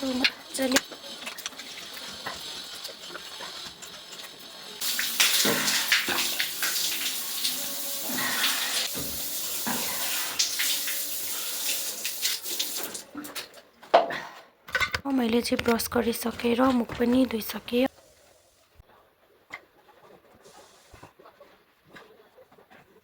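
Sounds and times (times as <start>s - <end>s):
tap water running and splashing: 0.0s - 13.6s.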